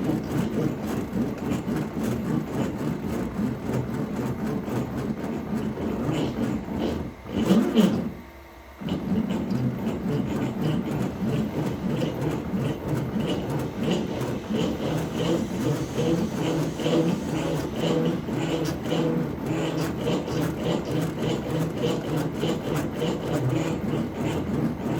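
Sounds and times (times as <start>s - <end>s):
cnc machine cutting wood: 0.0s - 24.9s.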